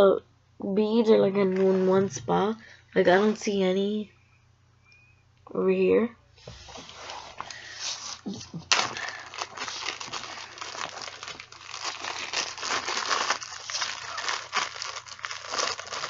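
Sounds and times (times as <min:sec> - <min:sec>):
plastic bag crinkling: 0:07.4 - 0:16.0.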